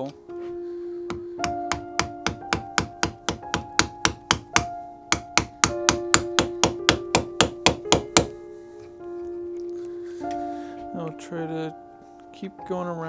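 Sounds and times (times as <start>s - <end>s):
hammer striking metal chisel: 1.1s - 8.4s.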